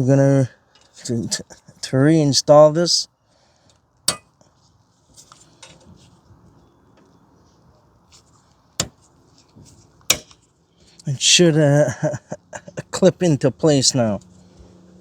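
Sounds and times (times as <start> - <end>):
light scraping and rustling: 0.7 - 1.9, 4.4 - 11.1, 14.1 - 15.0.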